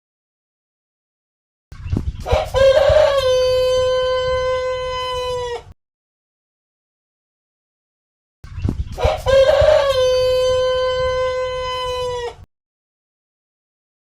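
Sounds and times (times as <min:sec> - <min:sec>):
rooster crowing: 0:02.2 - 0:05.7, 0:09.0 - 0:12.5.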